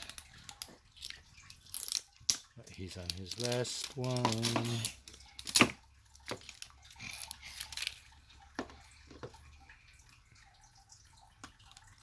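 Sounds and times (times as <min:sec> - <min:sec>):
plastic packaging crinkling: 0:00.0 - 0:08.2.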